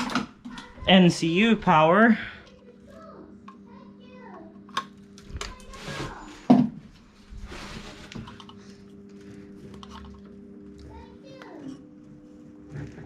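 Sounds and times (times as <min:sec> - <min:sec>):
steady low hum: 0:00.3 - 0:13.0.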